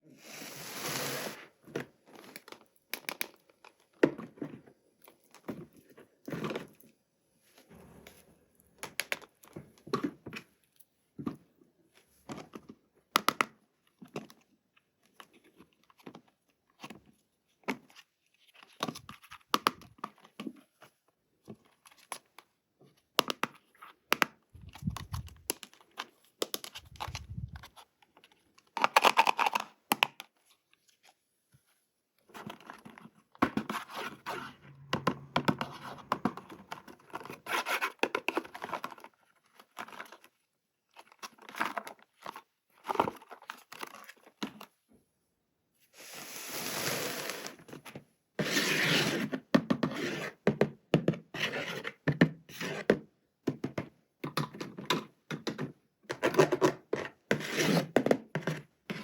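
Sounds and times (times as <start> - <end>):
plastic and cardboard crinkling: 24.6 - 34.9
low thumps: 34.4 - 36.9.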